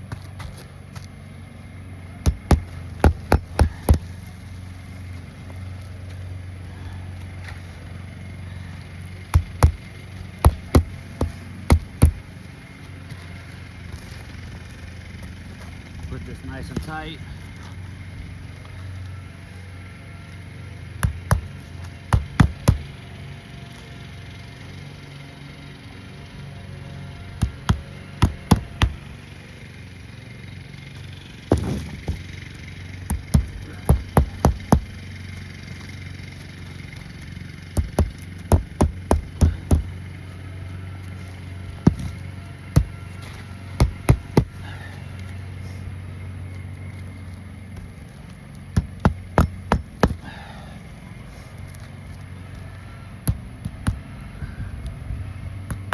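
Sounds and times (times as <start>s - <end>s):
steady low hum: 0.0s - 55.9s
hammer striking nails: 2.3s - 4.1s, 9.3s - 12.3s, 21.0s - 22.9s, 27.4s - 29.1s, 31.5s - 32.3s, 33.0s - 35.0s, 37.8s - 39.9s, 41.8s - 42.2s, 42.8s - 43.0s, 43.8s - 44.6s, 48.8s - 50.3s.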